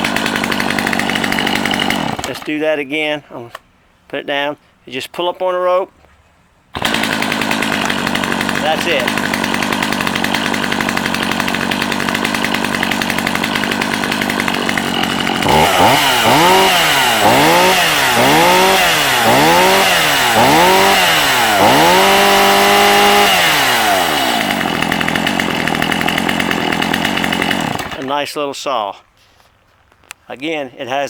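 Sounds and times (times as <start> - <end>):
chainsaw idling and revving: 0.0 - 2.6, 6.8 - 28.1.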